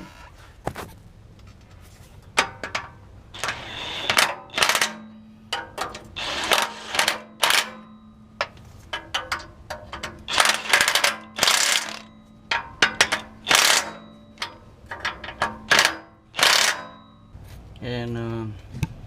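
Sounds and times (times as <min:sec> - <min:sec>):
metal clicks and knocks: 0:01.4 - 0:17.4
ratchet wrench ratcheting: 0:03.4 - 0:05.0, 0:05.6 - 0:17.0.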